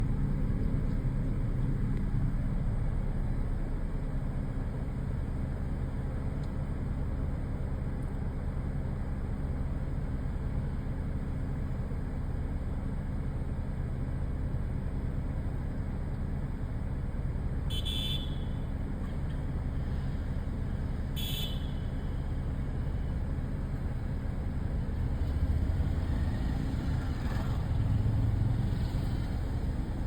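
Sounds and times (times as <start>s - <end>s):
vehicle road and engine rumble: 0.0s - 30.0s
car horn toots: 17.7s - 18.7s, 21.2s - 22.0s.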